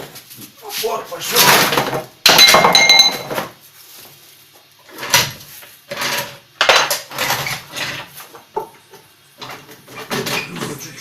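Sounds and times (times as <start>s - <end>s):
metal tools and parts clanking: 1.4s - 3.4s.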